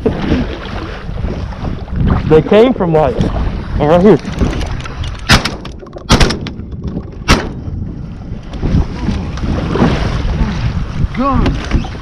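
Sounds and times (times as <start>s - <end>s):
water noise: 0.0s - 12.0s
wind: 0.0s - 12.0s
shotgun shots: 5.3s - 6.5s, 7.3s - 7.6s.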